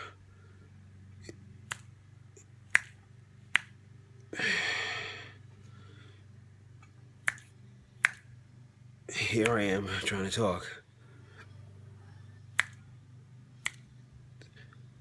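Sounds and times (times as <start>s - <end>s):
finger snaps: 1.2s - 1.9s, 2.7s - 3.8s, 7.2s - 8.3s, 9.4s - 9.7s, 12.5s - 12.9s, 13.6s - 14.8s.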